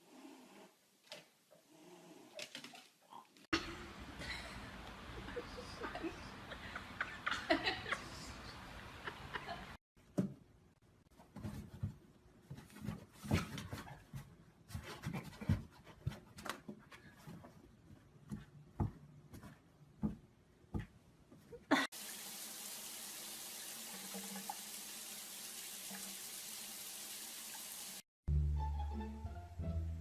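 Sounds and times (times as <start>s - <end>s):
running water hissing: 21.9s - 28.1s.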